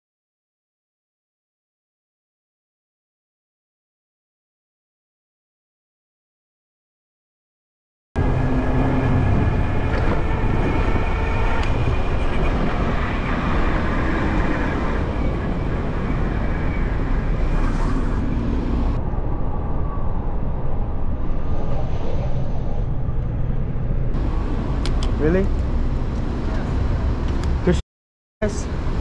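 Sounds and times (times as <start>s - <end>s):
wind rushing: 8.2s - 27.7s
road noise: 8.2s - 27.8s, 28.4s - 29.0s.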